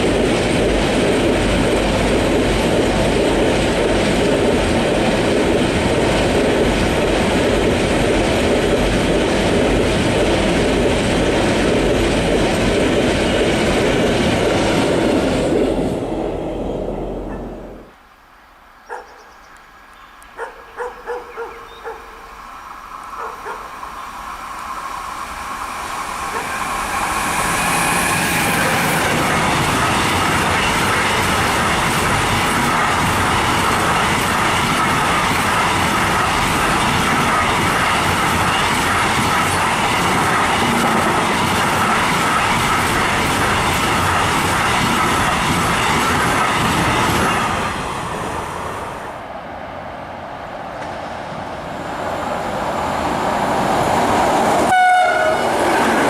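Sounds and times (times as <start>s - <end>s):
train wheels clattering on rails: 0.0s - 15.6s, 26.1s - 48.5s
rail squealing: 23.1s - 49.0s, 54.3s - 56.0s.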